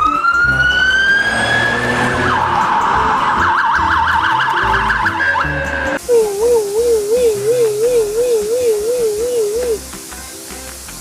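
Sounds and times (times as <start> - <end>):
toy police siren: 6.1 - 9.8.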